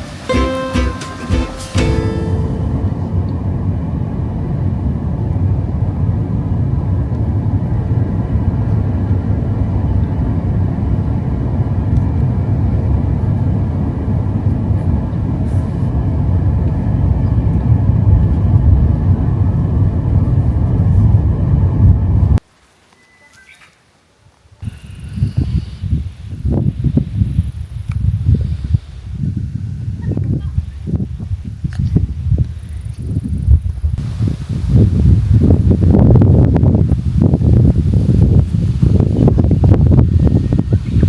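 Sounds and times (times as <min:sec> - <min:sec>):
car road and engine rumble: 0:00.0 - 0:22.4, 0:32.6 - 0:41.0.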